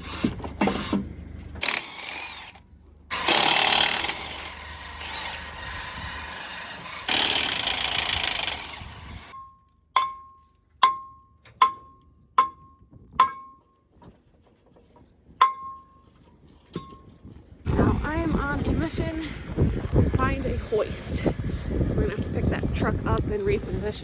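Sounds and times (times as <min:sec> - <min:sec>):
power tool rasping: 0:01.6 - 0:09.3.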